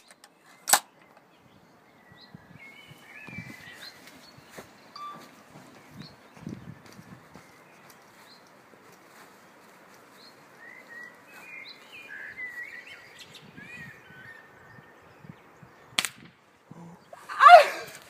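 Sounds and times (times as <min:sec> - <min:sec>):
birds chirping: 0:00.0 - 0:18.0
air rifle firing: 0:16.0 - 0:16.4.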